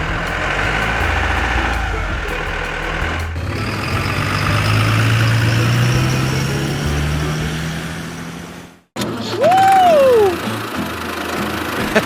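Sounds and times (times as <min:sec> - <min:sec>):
simulated truck engine running: 0:00.0 - 0:09.2.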